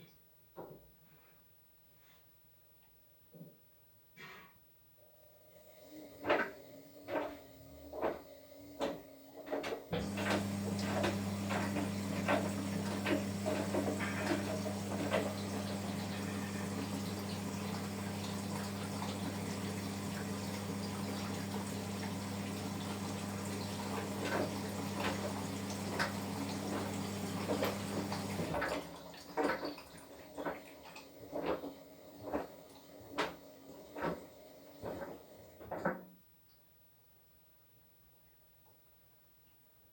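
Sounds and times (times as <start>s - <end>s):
washing machine hum: 5.4s - 36.0s
washing machine drum knocking: 10.0s - 28.8s
rushing water: 10.0s - 31.0s.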